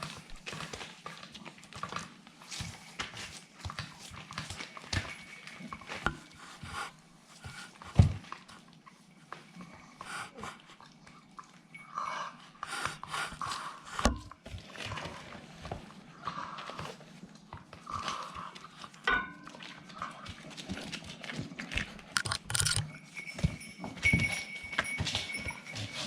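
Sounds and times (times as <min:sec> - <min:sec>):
puppies panting: 0:06.1 - 0:15.4.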